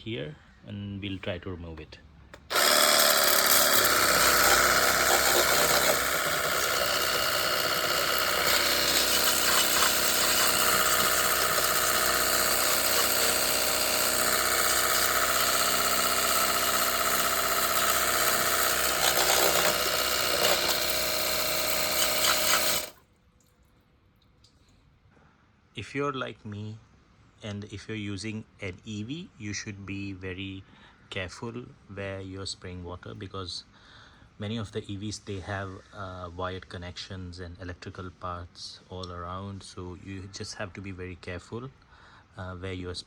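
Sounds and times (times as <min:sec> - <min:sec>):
pressure washer pump whining: 0:02.4 - 0:23.0.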